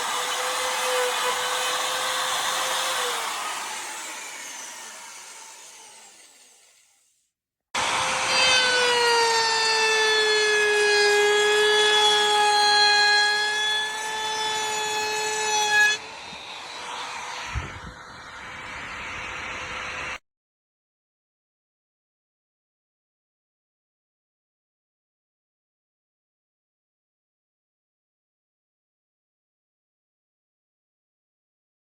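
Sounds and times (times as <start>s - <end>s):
wood router motor whining: 0.0s - 7.1s, 7.8s - 20.2s.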